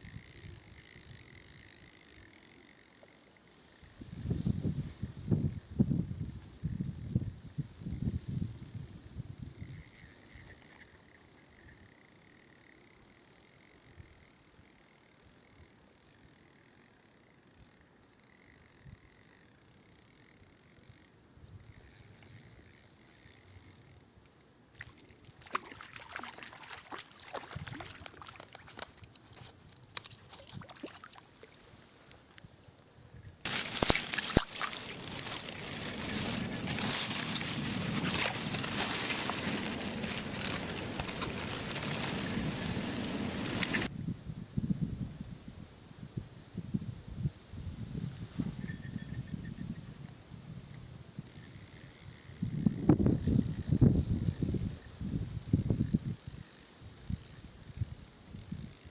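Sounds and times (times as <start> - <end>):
rustling: 33.5 - 43.9.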